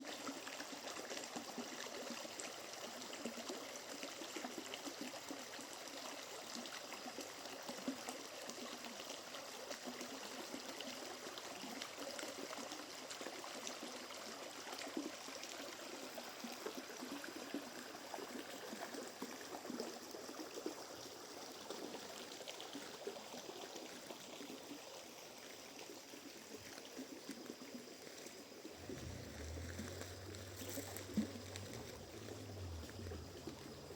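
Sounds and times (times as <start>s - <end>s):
trickling stream: 0.0s - 33.9s
low hum: 28.8s - 33.9s.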